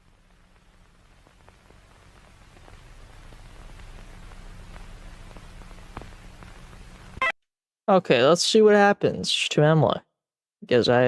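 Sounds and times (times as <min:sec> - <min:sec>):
low electrical hum: 0:00.0 - 0:07.2
static hiss: 0:00.0 - 0:07.3
crackles: 0:00.0 - 0:07.4.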